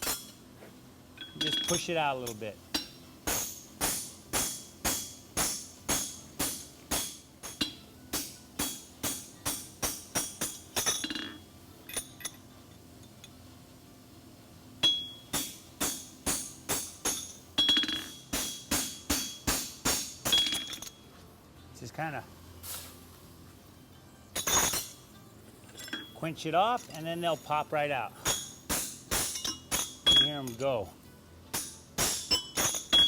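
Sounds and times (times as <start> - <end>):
hammer striking metal on anvil: 1.2 - 11.4, 14.8 - 21.0, 24.4 - 25.0, 28.2 - 30.7, 31.5 - 33.0.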